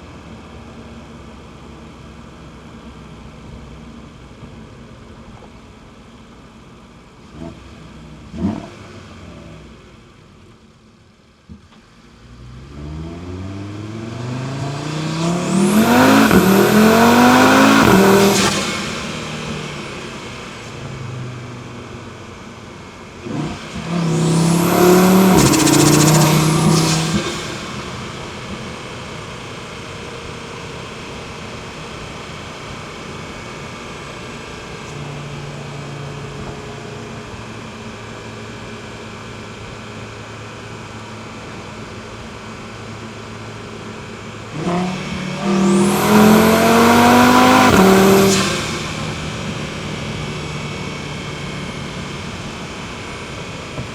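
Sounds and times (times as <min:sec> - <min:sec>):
car engine revving: 0:12.3 - 0:33.7, 0:44.5 - 0:53.9
intake and turbo hiss: 0:14.2 - 0:20.9, 0:23.3 - 0:29.8, 0:44.8 - 0:53.8.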